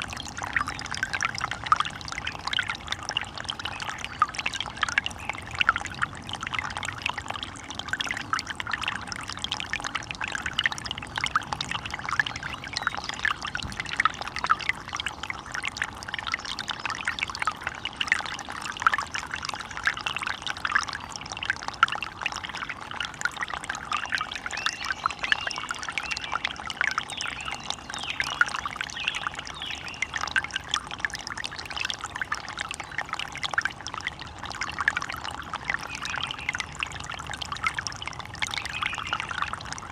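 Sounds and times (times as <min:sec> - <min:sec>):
water trickling and splashing: 0:00.0 - 0:39.9.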